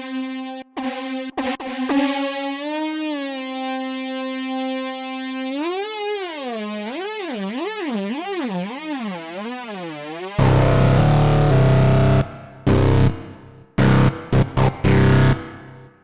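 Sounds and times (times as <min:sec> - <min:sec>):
synthesizer lead tone wobbling: 0:05.7 - 0:13.2, 0:13.8 - 0:15.4.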